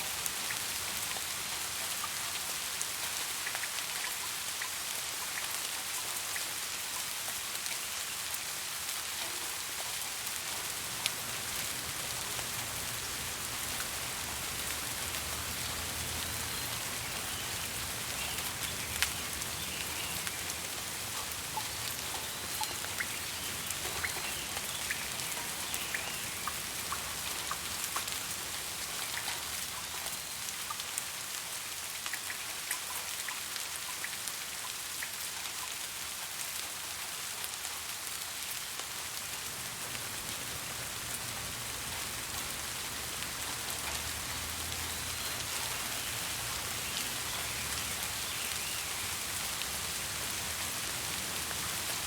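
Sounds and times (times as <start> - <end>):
steady rain hiss: 0.0 - 52.0
raindrops ticking: 10.4 - 31.1, 31.8 - 35.8, 38.7 - 52.0.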